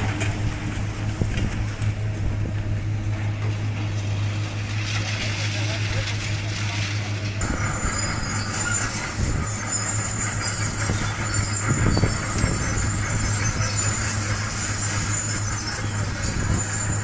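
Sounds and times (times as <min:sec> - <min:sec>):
diesel engine hum: 0:00.0 - 0:17.0
high-pitched metallic squeals: 0:04.4 - 0:17.0.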